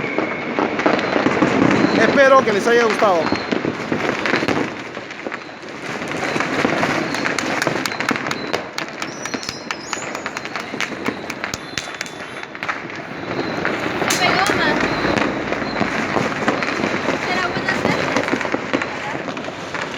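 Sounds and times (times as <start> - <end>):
fireworks and firecrackers banging: 0.0 - 19.9
high firework whistle: 3.2 - 19.9.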